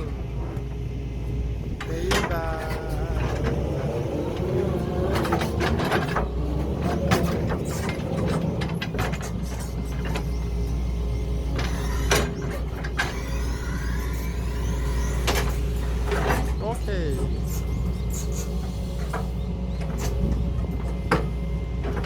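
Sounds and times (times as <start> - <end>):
excavator engine running: 0.0 - 22.0.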